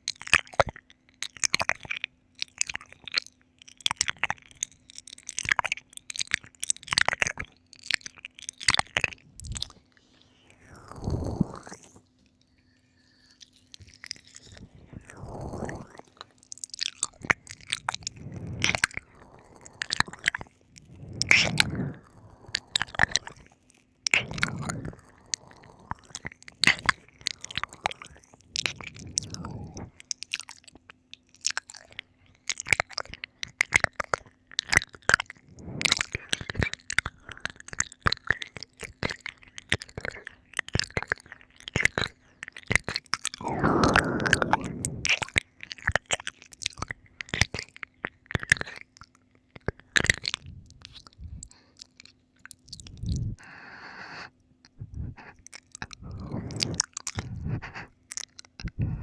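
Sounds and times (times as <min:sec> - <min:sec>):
tongue and lip clicks: 0:00.0 - 0:59.0
heavy gasping breaths: 0:14.3 - 0:16.4, 0:17.0 - 0:30.0, 0:43.4 - 0:45.3, 0:52.8 - 0:59.0.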